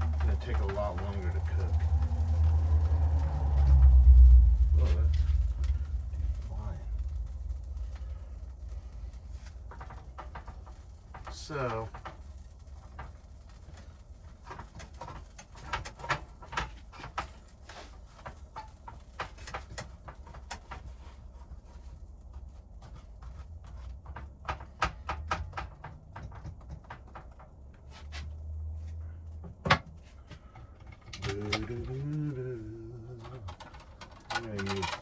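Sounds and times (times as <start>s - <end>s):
food frying in a pan: 0.0s - 28.0s.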